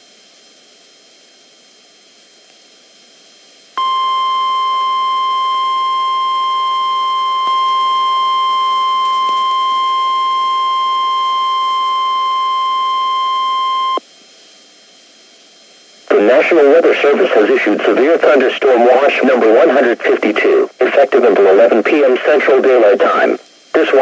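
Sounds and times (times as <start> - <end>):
piercing warning alarm tone: 3.8 - 14.0.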